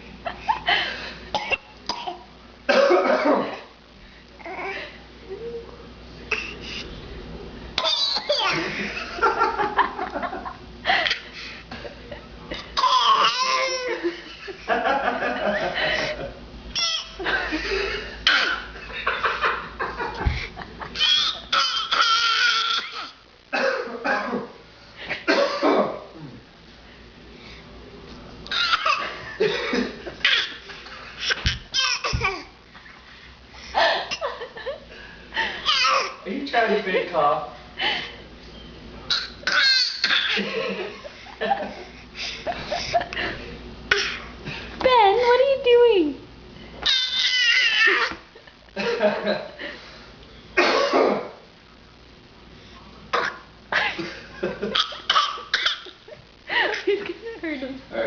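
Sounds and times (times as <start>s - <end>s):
baby fake coughing: 1.4s - 3.4s, 7.8s - 8.6s, 12.8s - 13.8s, 18.2s - 18.7s, 21.0s - 24.4s, 28.5s - 29.0s, 30.2s - 30.6s, 35.7s - 36.2s, 39.1s - 40.4s, 43.9s - 44.3s, 50.6s - 51.4s, 53.1s - 53.5s, 54.7s - 56.0s
people laughing: 8.5s - 12.7s, 13.8s - 16.4s, 40.3s - 43.6s, 47.8s - 49.8s, 56.1s - 57.8s.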